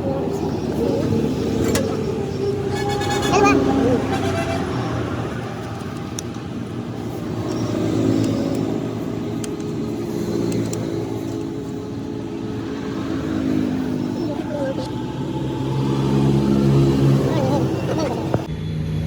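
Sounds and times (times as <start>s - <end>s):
engine running: 0.0s - 19.0s.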